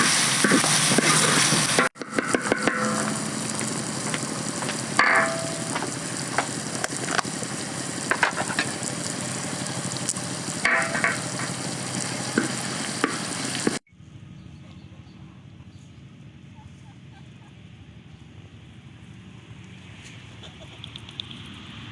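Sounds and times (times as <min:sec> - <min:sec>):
food sizzling in a pan: 0:00.0 - 0:13.8.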